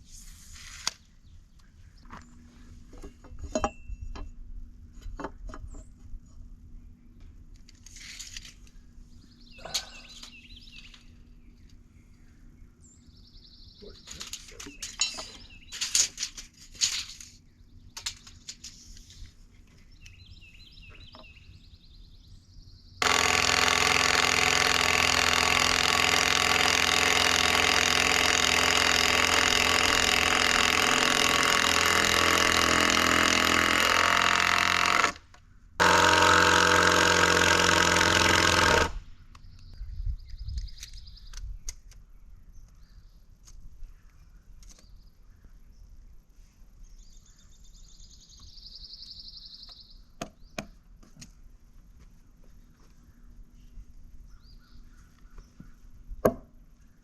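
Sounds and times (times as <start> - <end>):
impact driver hammering: 23.0 - 35.2, 35.8 - 39.0.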